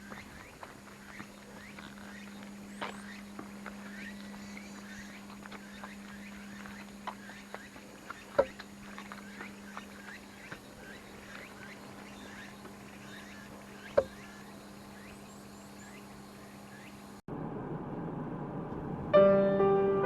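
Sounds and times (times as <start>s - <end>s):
short chirping calls: 0.0s - 17.2s
steady low hum: 0.0s - 19.2s
piano music: 18.7s - 20.0s.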